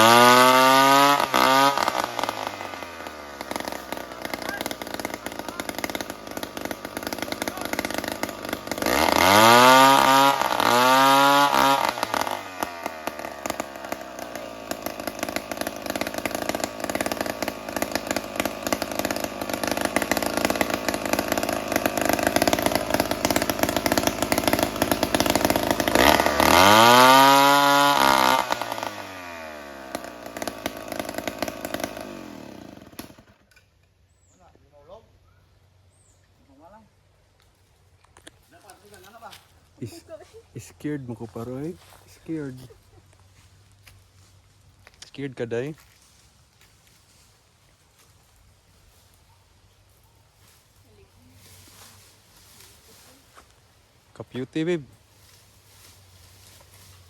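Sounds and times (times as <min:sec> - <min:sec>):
chainsaw engine revving: 0:00.0 - 0:33.6.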